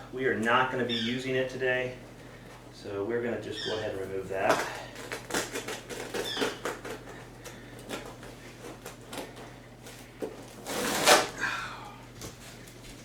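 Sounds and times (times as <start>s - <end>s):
velcro strap tearing: 4.9s - 7.0s, 10.6s - 11.4s.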